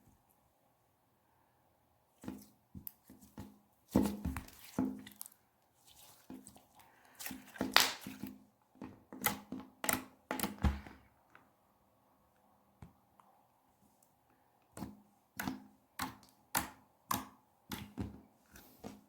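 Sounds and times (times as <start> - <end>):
slime squished by hand: 3.9 - 8.3
wet clicks and pops: 7.6 - 8.2.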